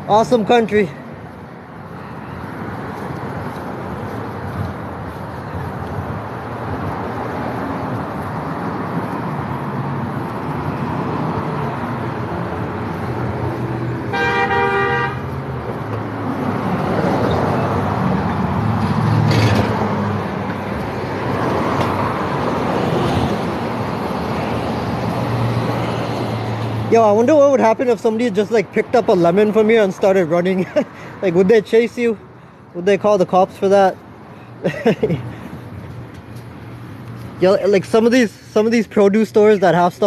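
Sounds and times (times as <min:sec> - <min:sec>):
street traffic passing: 0:00.0 - 0:40.0
vehicle horn honking: 0:14.1 - 0:15.3.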